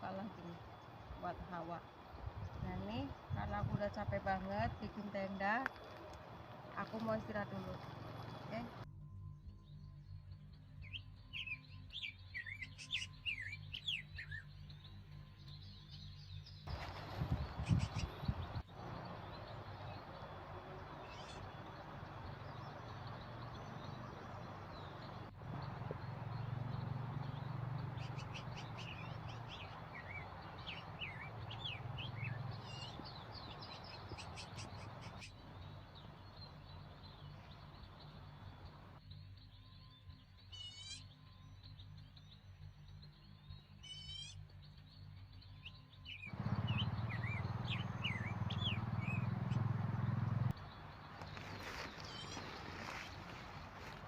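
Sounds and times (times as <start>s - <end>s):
birds chirping and calling: 15.6s - 20.1s, 20.8s - 54.0s
trilled bird calls: 16.0s - 54.0s
low outdoor rumble: 46.2s - 54.0s.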